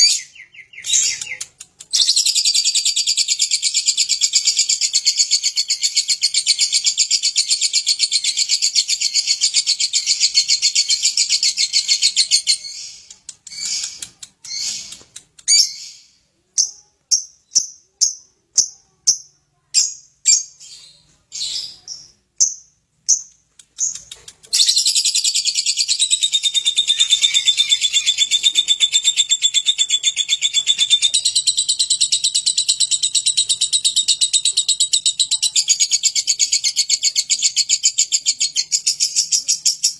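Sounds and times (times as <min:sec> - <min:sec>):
lovebird chattering trill: 0:00.0 - 0:16.0, 0:21.4 - 0:39.9
lovebird short chirps: 0:10.0 - 0:16.8.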